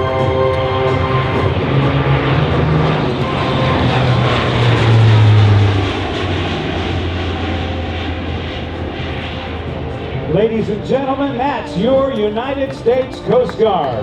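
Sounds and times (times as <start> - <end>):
turboprop aircraft flying past: 0.0 - 14.0.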